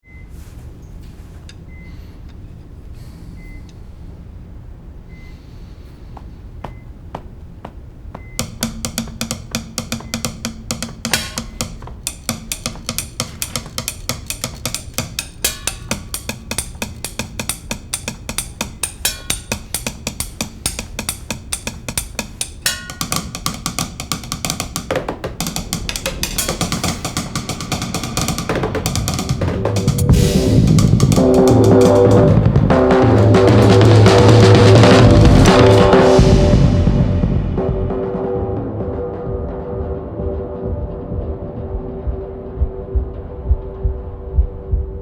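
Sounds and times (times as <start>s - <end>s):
sparse ticks: 8.4s - 34.4s
quick steady drum beat: 8.4s - 36.5s.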